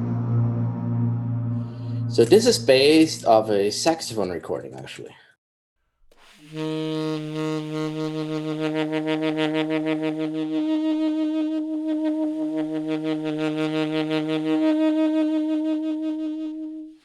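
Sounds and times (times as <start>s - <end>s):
throbbing synthesizer bass drone: 0.0s - 3.5s.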